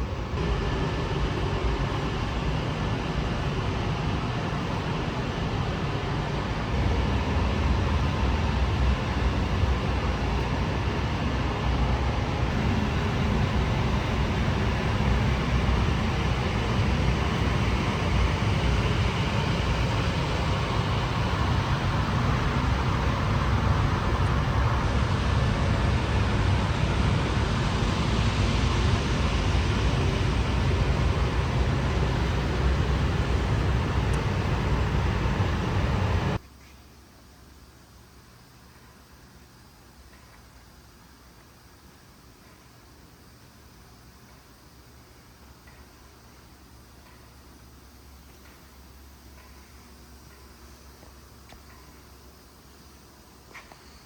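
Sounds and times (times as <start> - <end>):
ventilation air rushing: 0.0 - 36.4.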